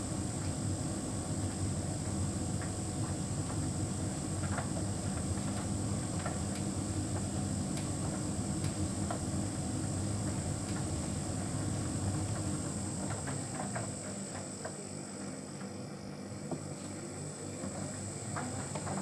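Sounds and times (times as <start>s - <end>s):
tumble dryer humming: 0.0s - 15.8s, 16.4s - 19.0s
light clicks of turning drum: 8.6s - 9.2s.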